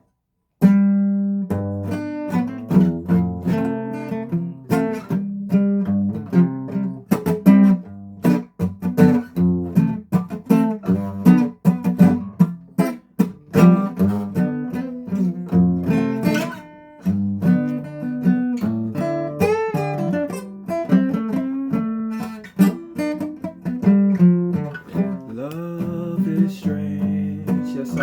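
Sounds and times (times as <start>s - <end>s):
guitar strumming chords: 0.6s - 28.0s.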